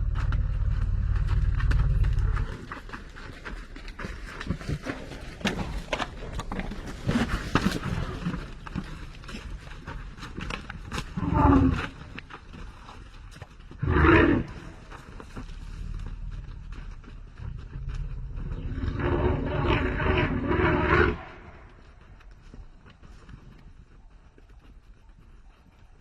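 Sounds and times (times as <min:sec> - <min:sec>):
rustling: 0:00.0 - 0:24.7
elephant roaring: 0:11.1 - 0:12.0, 0:13.8 - 0:14.8, 0:18.5 - 0:21.7.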